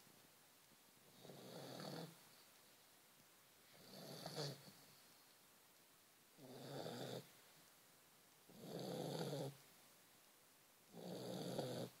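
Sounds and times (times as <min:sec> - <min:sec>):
dog snoring: 0:01.0 - 0:02.2, 0:03.8 - 0:04.8, 0:06.4 - 0:07.3, 0:08.5 - 0:09.6, 0:10.9 - 0:12.0.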